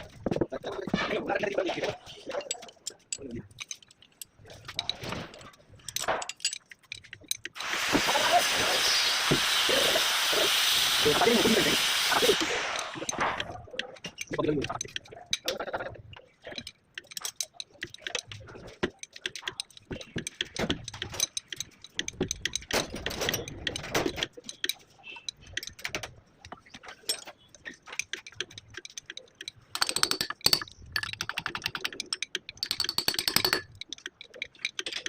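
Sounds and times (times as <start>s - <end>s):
metal tools clinking on metal: 2.1s - 7.6s, 12.8s - 35.0s
rapid even clicking: 12.4s - 35.0s.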